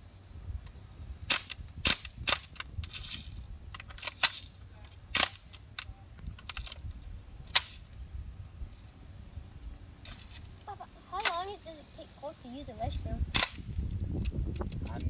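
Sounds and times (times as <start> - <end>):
bb gun pops: 13.4 - 14.9.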